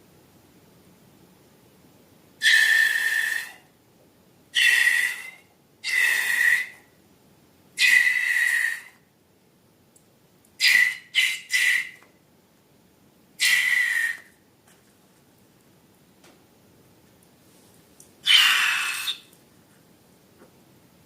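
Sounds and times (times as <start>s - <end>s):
balloon air whistling squeal: 13.4s - 14.3s.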